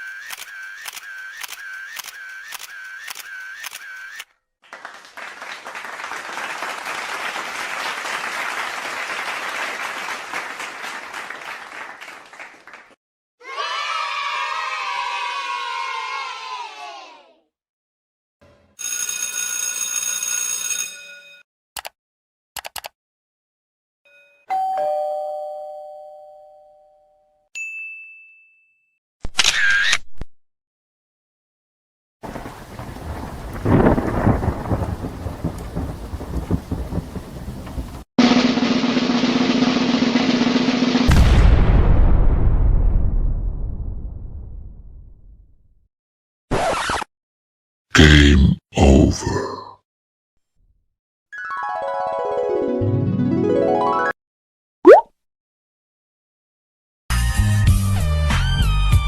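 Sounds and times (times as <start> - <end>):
camera shutter clicks: 0.0 - 4.3, 29.3 - 29.8
applause: 4.6 - 13.0
doorbell ding-dong chime: 24.1 - 28.9
short high ding: 27.6 - 28.9.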